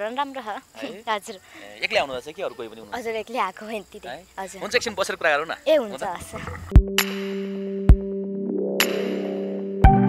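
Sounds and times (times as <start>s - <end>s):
bass drum thump: 6.2s - 7.0s
synthesizer chords: 6.4s - 10.0s.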